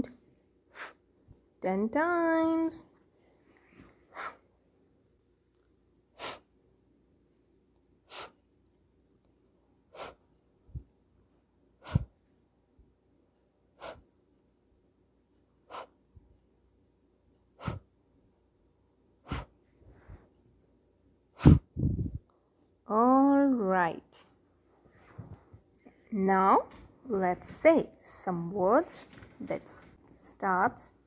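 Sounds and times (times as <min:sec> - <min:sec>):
person making breathy f sounds: 0:21.4 - 0:22.2.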